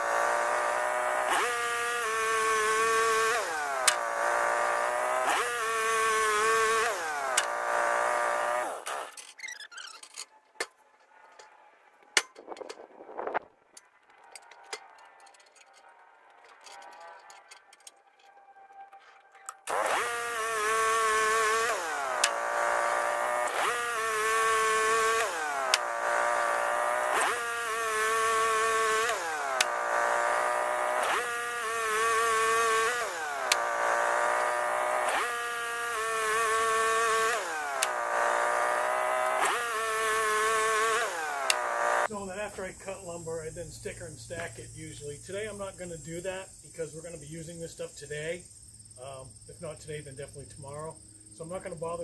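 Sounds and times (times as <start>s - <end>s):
sawmill gasoline engine running: 0.0s - 9.2s, 19.6s - 42.9s.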